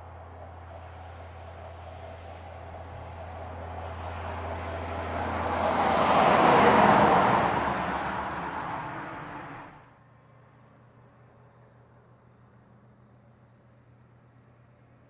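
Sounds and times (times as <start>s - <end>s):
heavy truck passing: 0.0s - 9.9s.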